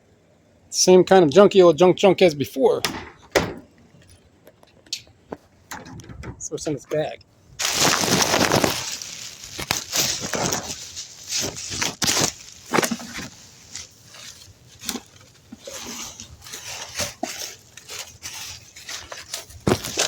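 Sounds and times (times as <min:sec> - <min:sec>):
knocks and clicks of hard parts: 0:02.8 - 0:06.5
hands rummaging through a bag: 0:07.6 - 0:20.0.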